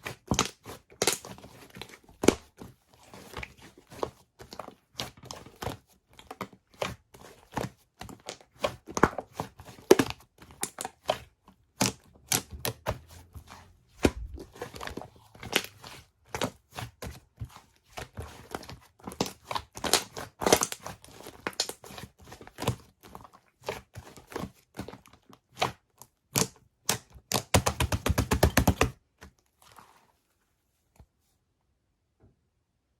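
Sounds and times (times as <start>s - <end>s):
slime squished by hand: 8.1s - 23.1s.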